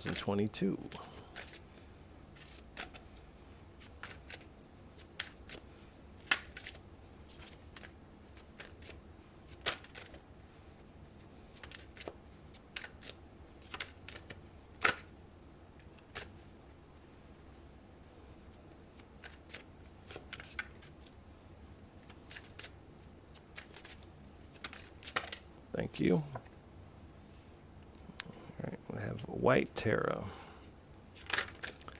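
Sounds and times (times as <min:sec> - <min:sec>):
cards being shuffled: 0:00.0 - 0:15.1, 0:15.8 - 0:16.5, 0:18.6 - 0:21.2, 0:21.9 - 0:26.6, 0:31.1 - 0:31.9.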